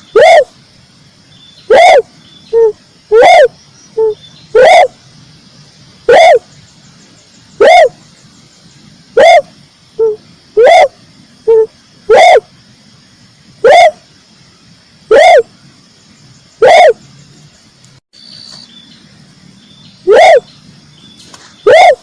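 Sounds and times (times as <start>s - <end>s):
dove calls: 0.0s - 0.6s, 1.6s - 5.0s, 6.0s - 8.1s, 9.0s - 12.5s, 13.6s - 14.1s, 15.1s - 15.6s, 16.6s - 17.1s, 20.0s - 20.5s, 21.2s - 22.0s.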